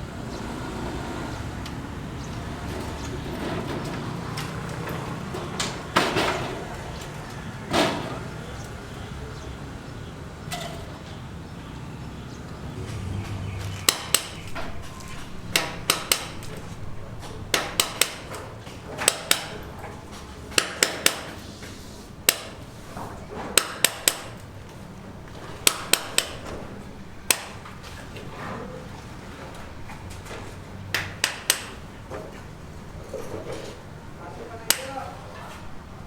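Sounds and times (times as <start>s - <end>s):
hammer blows: 12.8s - 36.0s.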